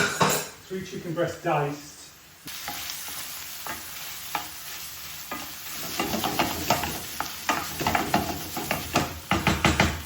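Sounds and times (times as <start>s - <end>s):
food sizzling in a pan: 0.0s - 10.0s.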